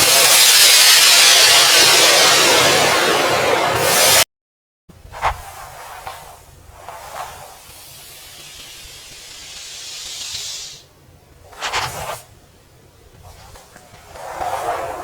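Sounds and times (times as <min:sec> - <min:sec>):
hiss: 0:00.0 - 0:04.2, 0:05.3 - 0:12.3.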